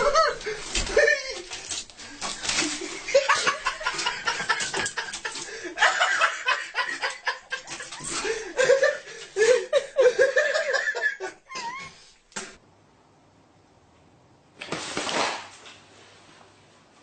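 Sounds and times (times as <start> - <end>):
person laughing: 0.0 - 1.6, 2.6 - 12.1.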